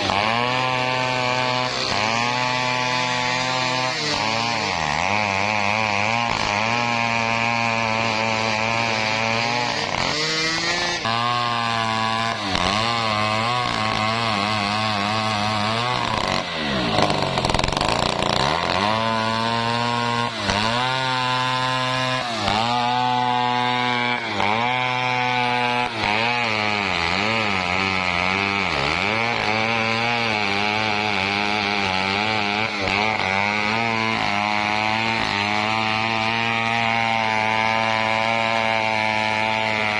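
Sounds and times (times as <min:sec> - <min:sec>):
chainsaw cutting through log: 0:00.0 - 0:39.9.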